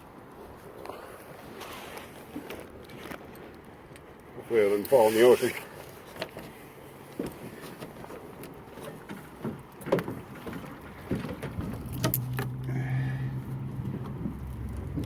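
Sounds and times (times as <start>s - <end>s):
knocks in aluminum rowboat: 6.0s - 12.6s, 13.5s - 15.0s.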